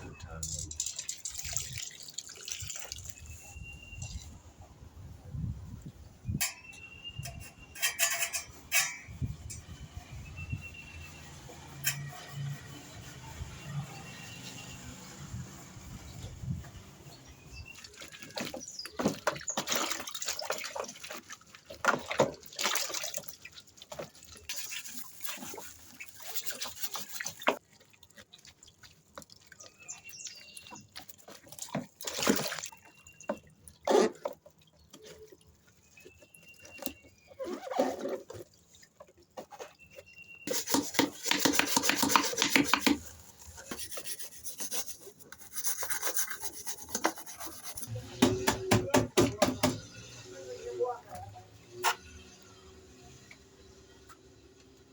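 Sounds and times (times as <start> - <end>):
wet scrubbing strokes: 16.9 - 48.2.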